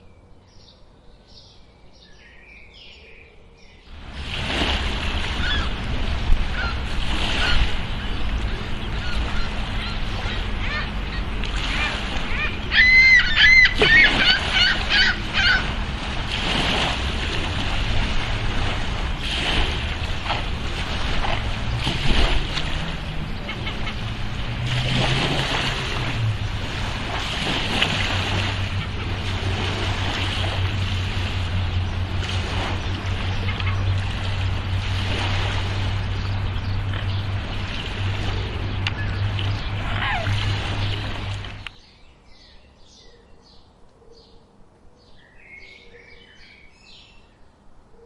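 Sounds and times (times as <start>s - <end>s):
steady wash of noise: 3.9s - 41.7s
bird harsh calls: 5.3s - 5.8s, 6.4s - 15.8s, 36.2s - 41.7s
faint bird calls: 5.3s - 5.8s, 6.4s - 15.8s, 36.4s - 47.1s.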